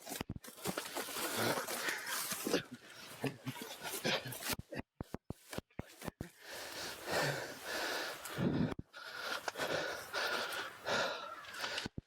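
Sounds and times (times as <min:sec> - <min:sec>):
person breathing heavily: 0:06.3 - 0:12.0.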